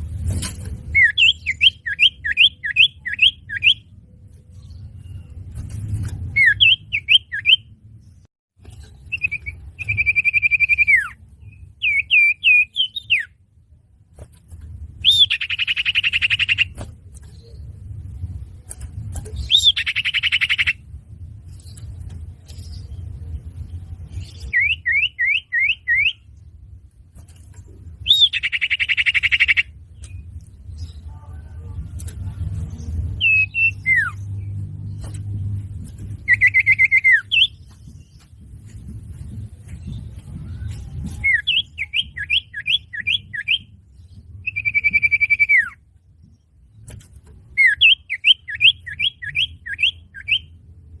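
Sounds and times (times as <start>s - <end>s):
bird chirping and trilling: 0.0s - 13.5s, 14.9s - 26.5s, 27.7s - 46.8s, 47.4s - 50.7s
bird whistled notes: 9.1s - 13.3s, 44.4s - 45.8s
buzzy bird trill: 15.0s - 17.8s, 19.3s - 20.9s
low rumble: 20.8s - 24.5s, 29.7s - 42.2s.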